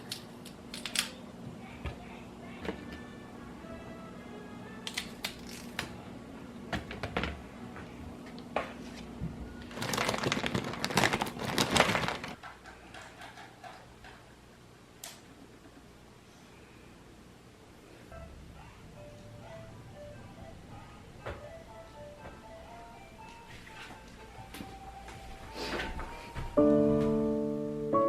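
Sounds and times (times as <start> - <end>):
steady low hum: 0.0 - 9.7, 13.6 - 28.0
objects clicking and tapping: 12.3 - 14.3.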